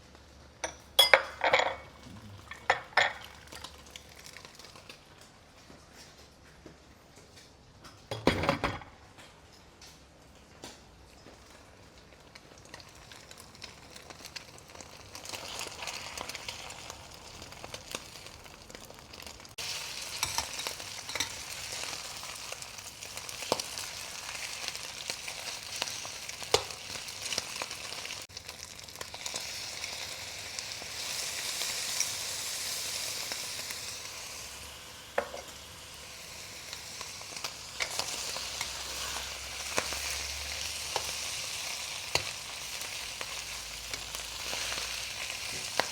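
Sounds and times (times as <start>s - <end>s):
food sizzling in lard: 1.8s - 5.3s, 11.4s - 45.9s.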